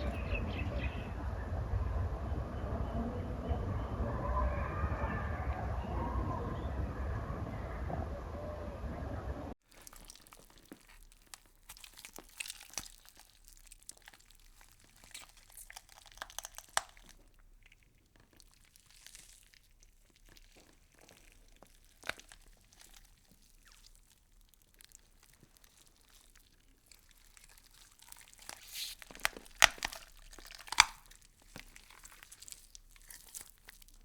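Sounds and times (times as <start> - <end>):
loud steady sound: 0.0 - 9.5
insect chewing leaf: 9.6 - 34.0.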